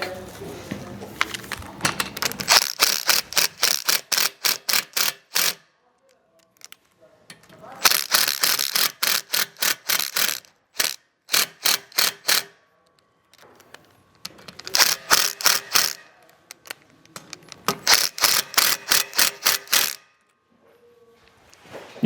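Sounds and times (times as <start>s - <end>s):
impact driver hammering: 2.4s - 5.6s, 7.8s - 12.6s, 14.6s - 16.0s, 17.6s - 20.0s.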